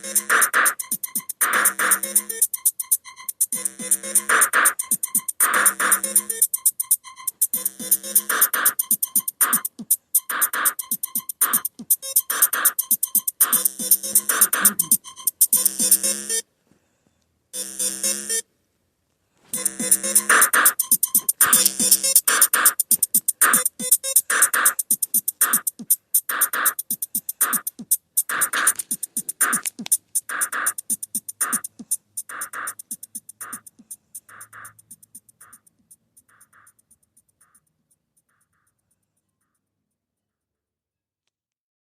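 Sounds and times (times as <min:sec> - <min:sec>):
electronic drum beat: 0:00.0 - 0:16.2, 0:19.6 - 0:38.9
fast ticking hits: 0:00.0 - 0:16.2, 0:19.6 - 0:39.6
held synth notes: 0:00.0 - 0:16.4.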